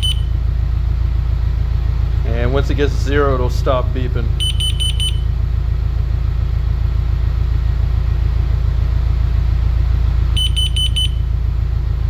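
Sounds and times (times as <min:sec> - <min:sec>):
shrill alarm beeps: 0:00.0 - 0:00.4, 0:04.4 - 0:05.3, 0:10.4 - 0:11.3
engine idling rumble: 0:00.0 - 0:12.0.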